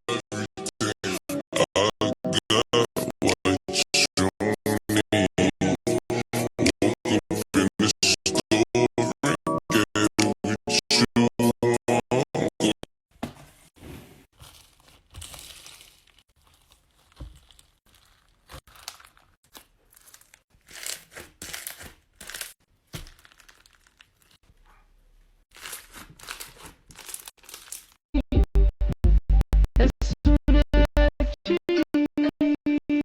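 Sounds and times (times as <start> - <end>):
slime squeezed by hand: 14.4 - 24.4, 25.5 - 28.0.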